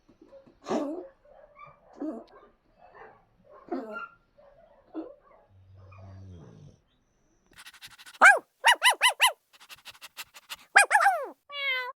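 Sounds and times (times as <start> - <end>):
dog yipping: 7.6 - 11.3.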